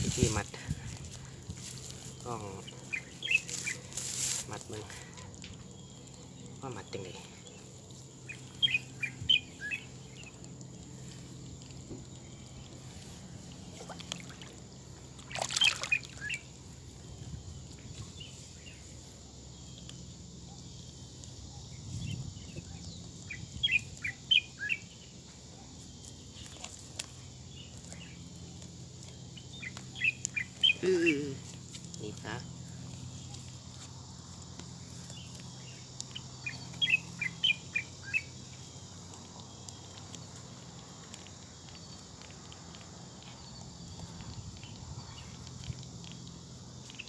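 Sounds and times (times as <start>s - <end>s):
bird chirping: 1.9s - 3.9s, 5.6s - 10.5s, 13.6s - 25.6s, 29.0s - 33.6s, 34.8s - 40.3s.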